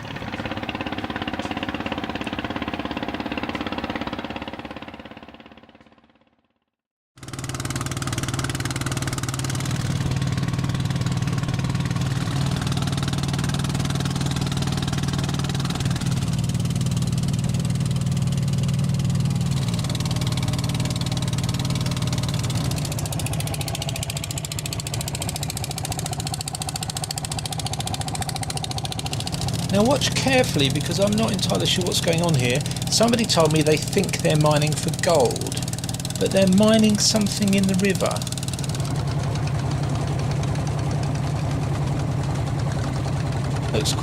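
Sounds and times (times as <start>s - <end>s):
ferry engine running: 0.0s - 6.1s, 7.2s - 44.0s.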